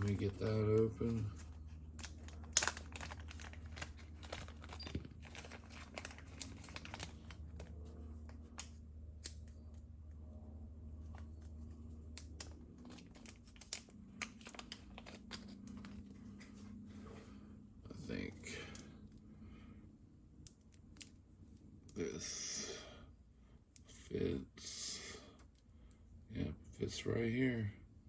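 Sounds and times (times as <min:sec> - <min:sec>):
plastic packaging tearing and crinkling: 0:00.0 - 0:07.7, 0:12.1 - 0:16.0.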